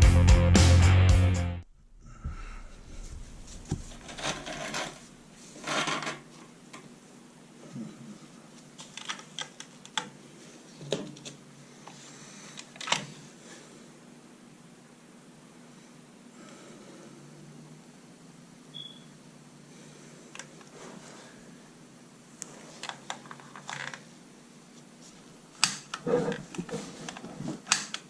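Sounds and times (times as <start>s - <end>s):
rock music: 0.0s - 1.6s
faint steady hum: 1.6s - 28.0s.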